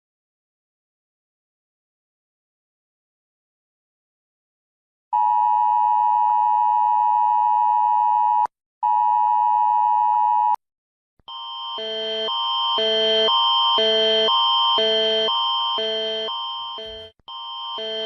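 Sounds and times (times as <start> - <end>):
alarm alternating high and low chord: 11.3 - 18.0.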